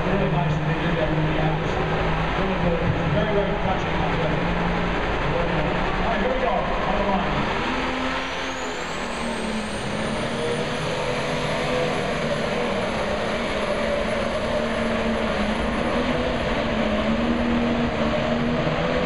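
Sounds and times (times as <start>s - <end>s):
diesel engine at full power: 0.0s - 19.0s
turbocharger whine: 0.0s - 19.0s.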